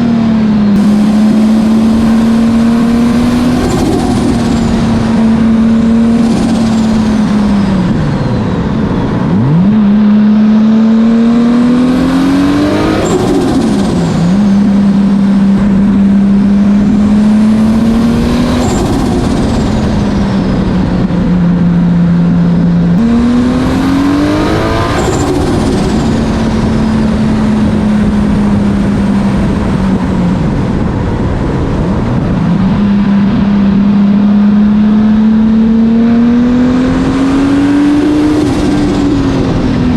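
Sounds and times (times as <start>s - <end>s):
car engine revving: 0.0s - 39.9s.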